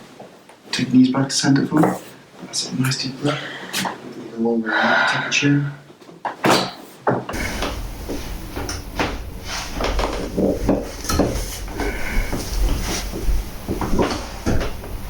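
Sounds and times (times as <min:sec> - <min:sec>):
rustling: 0:07.4 - 0:15.0.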